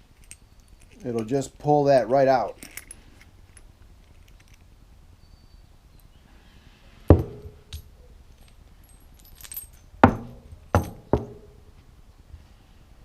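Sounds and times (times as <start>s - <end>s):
light metal rattle: 0.0s - 4.7s, 7.1s - 11.8s
small metal parts clinking: 0.0s - 4.7s, 7.1s - 11.5s.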